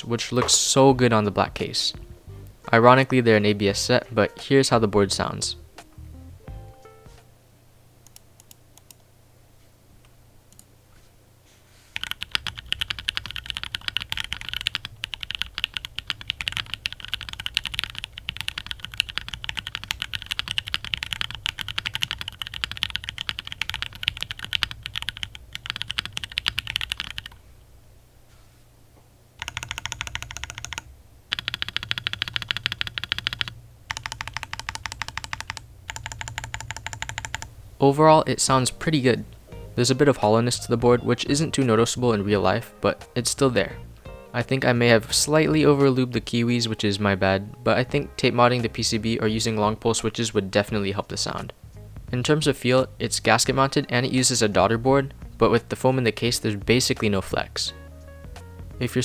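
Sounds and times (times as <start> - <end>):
mechanical keyboard typing: 12.0 - 27.4, 29.4 - 37.5.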